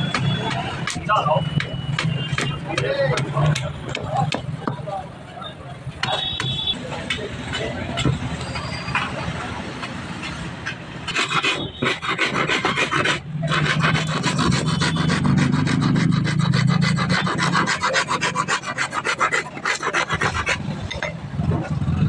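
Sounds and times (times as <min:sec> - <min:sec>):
hand tool scraping metal: 0:10.2 - 0:21.2.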